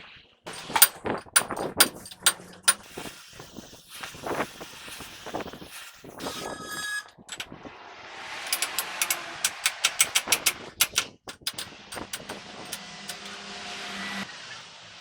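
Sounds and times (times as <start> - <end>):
sharp clicks: 0.5 - 3.1, 8.5 - 13.4.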